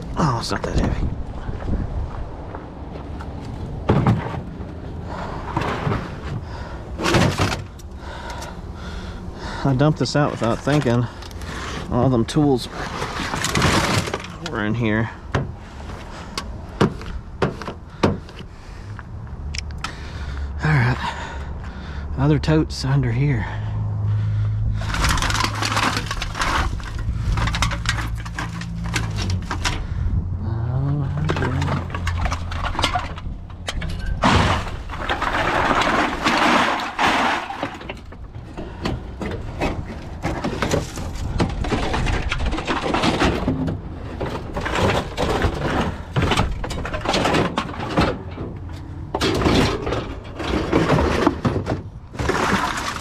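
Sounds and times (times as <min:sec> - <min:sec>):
trash clattering and rustling: 0:02.9 - 0:19.0, 0:24.7 - 0:30.0, 0:31.1 - 0:53.0.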